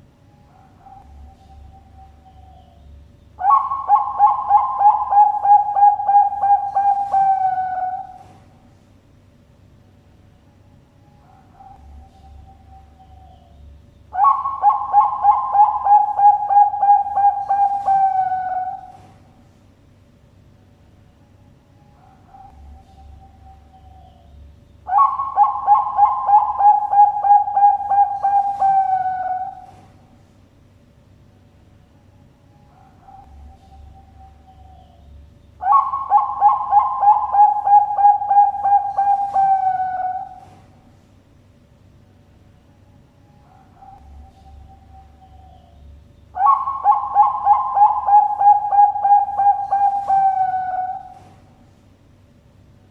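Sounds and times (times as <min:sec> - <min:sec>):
dove cooing: 0:03.4 - 0:08.6, 0:14.1 - 0:19.4, 0:24.9 - 0:30.2, 0:32.6 - 0:40.9, 0:46.4 - 0:51.7.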